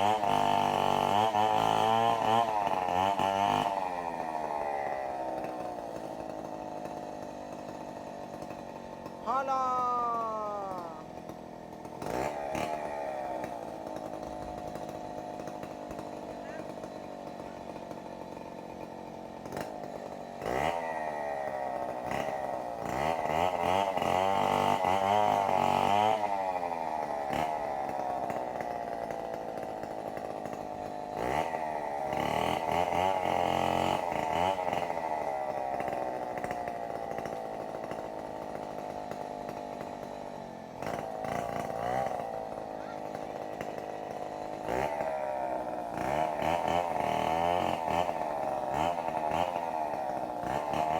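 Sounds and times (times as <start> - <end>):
chainsaw idling and revving: 0.0 - 50.9.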